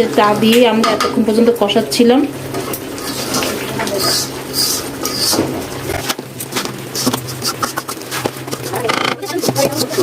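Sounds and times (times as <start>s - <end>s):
spatula scraping a pan: 2.6s - 5.6s, 6.9s - 8.2s.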